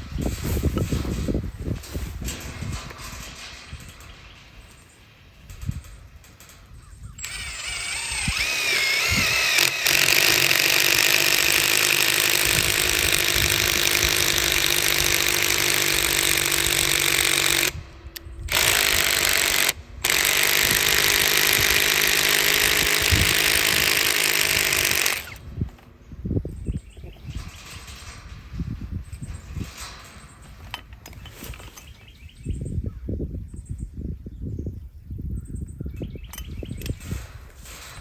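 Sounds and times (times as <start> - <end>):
loud power tool running: 7.2 - 17.8, 18.5 - 25.6.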